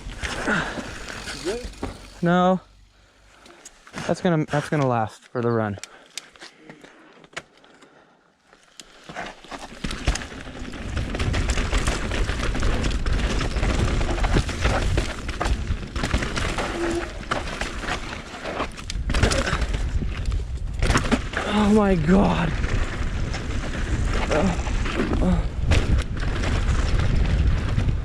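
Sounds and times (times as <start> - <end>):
tyre noise on dirt: 0.0 - 2.3, 8.9 - 28.0
bike rattling and knocking: 0.2 - 2.2, 9.6 - 21.9.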